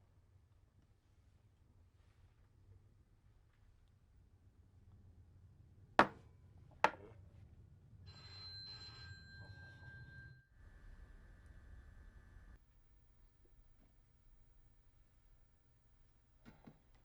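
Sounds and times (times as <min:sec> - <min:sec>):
high-pitched ringing tone: 0:08.1 - 0:11.3.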